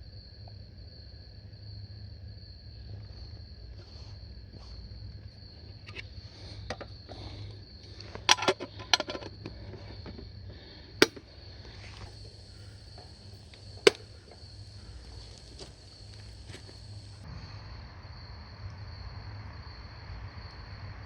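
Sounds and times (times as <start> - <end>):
sharp clicks and knocks: 8.0 - 10.2, 11.0 - 11.2.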